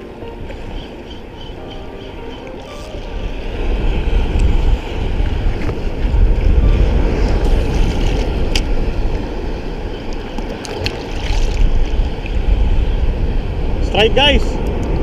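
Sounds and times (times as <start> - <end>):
rough surf: 0.0 - 15.0
wind buffeting microphone: 0.0 - 15.0
sharp ticks: 0.2 - 3.1.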